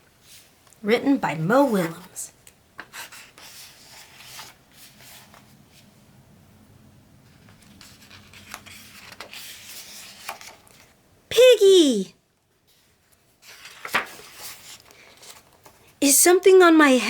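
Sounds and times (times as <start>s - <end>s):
book pages rustling and turning: 1.6s - 6.0s, 7.2s - 11.0s, 12.6s - 16.0s.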